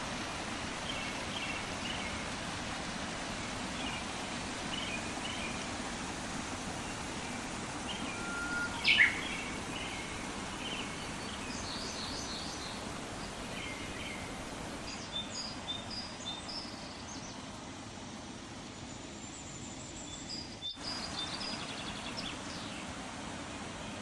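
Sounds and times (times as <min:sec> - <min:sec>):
low background rush: 0:00.0 - 0:24.0
small birds chirping: 0:06.7 - 0:17.5.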